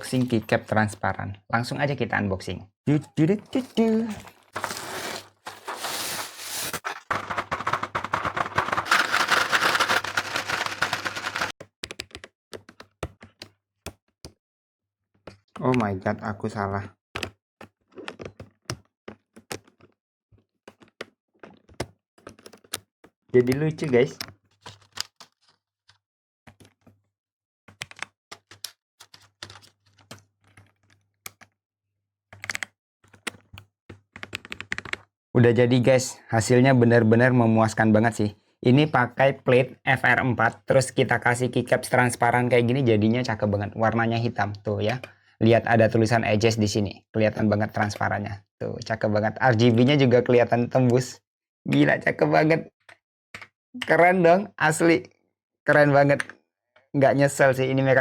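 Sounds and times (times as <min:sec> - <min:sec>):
plastic packaging rustling: 0:03.5 - 0:11.6
plastic keycaps clattering: 0:03.6 - 0:12.2.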